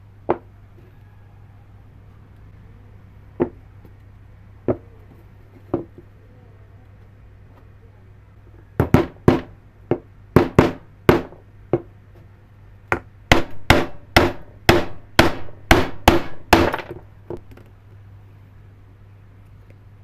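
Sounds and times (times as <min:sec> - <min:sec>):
hammer striking: 0:12.9 - 0:17.0.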